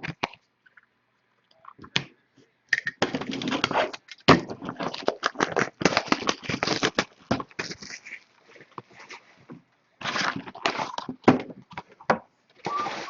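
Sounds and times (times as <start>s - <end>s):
cards and packaging rustling: 3.1s - 9.3s.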